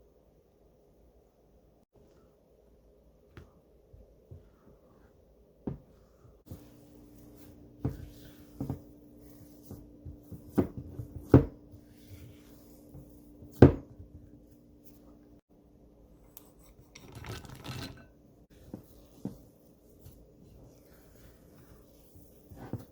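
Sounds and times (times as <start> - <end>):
faint steady hum: 0.0 - 17.2.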